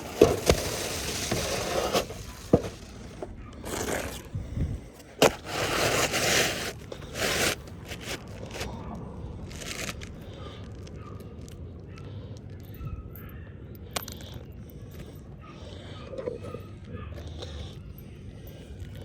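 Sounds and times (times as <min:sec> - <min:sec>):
scraping and rustling: 0:00.0 - 0:04.4, 0:05.0 - 0:08.8.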